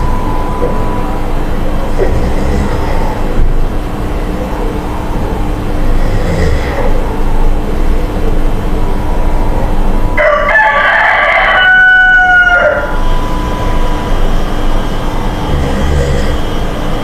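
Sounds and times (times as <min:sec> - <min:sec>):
low rumbling background noise: 0:00.0 - 0:17.0
rooster crowing: 0:10.2 - 0:14.9.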